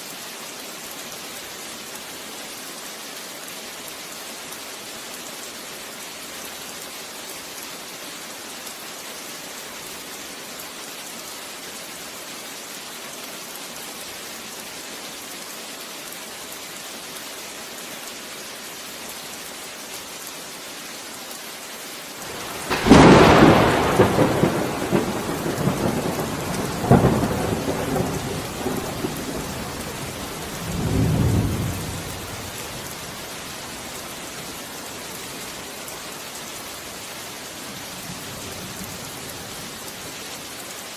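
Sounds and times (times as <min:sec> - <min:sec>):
steady rain falling: 0:00.0 - 0:40.9
thunderclap and rumbling: 0:22.2 - 0:32.6.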